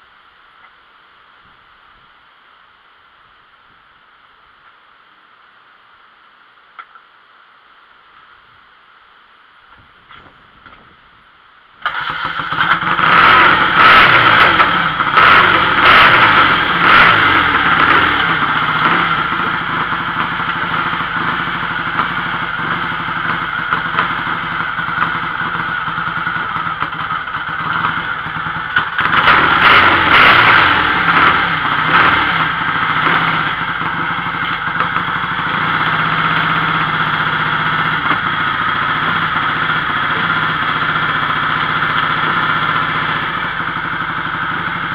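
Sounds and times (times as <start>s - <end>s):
motorcycle engine starting and revving: 11.8s - 44.9s.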